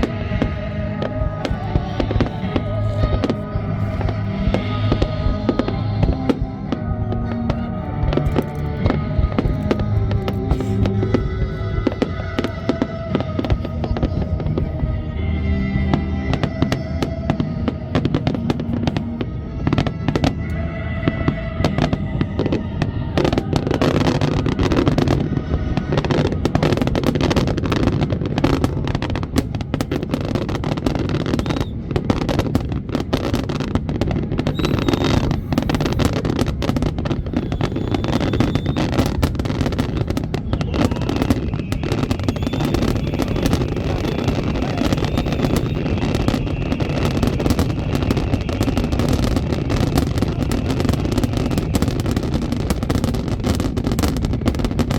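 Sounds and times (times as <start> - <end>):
fireworks bursting and crackling: 0.0 - 54.9
music: 0.0 - 54.9.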